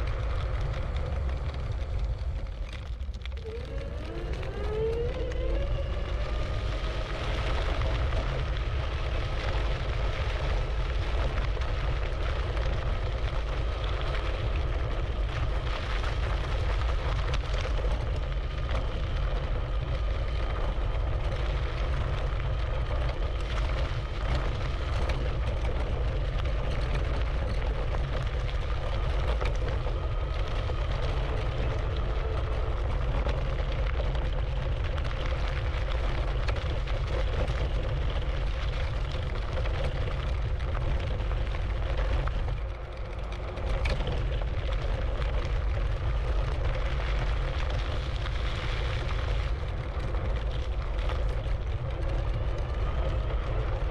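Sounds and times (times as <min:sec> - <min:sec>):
wind rumble on microphone: 0:00.0 - 0:53.9
electric scooter motor whining: 0:03.2 - 0:08.6.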